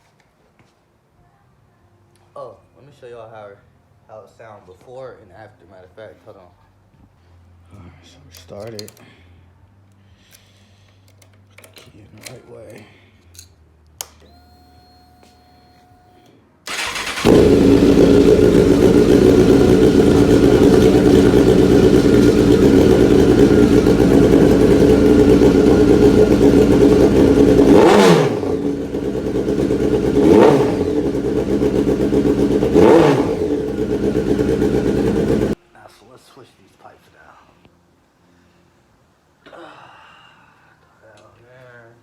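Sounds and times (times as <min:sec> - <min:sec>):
engine revving: 0:16.7 - 0:35.6
motorcycle engine running: 0:16.7 - 0:35.6.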